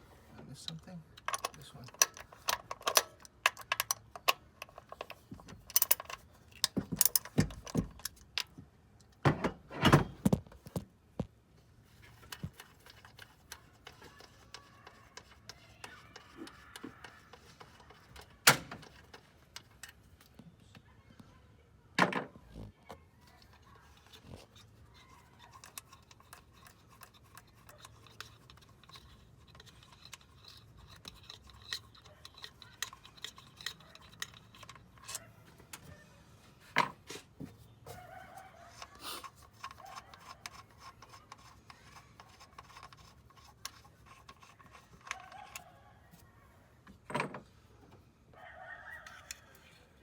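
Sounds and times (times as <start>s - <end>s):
metal tools clinking: 1.2s - 8.4s.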